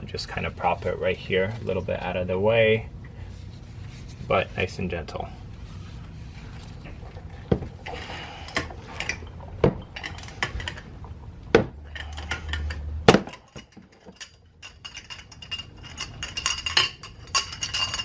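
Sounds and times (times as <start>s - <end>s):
steel tools clinking: 11.9s - 18.0s.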